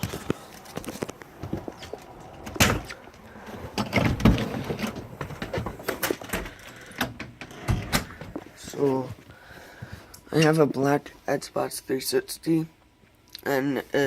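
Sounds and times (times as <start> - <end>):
footsteps: 0.0 - 6.6, 8.0 - 11.2
handling noise: 0.0 - 10.1
knocks and thumps: 3.7 - 8.5.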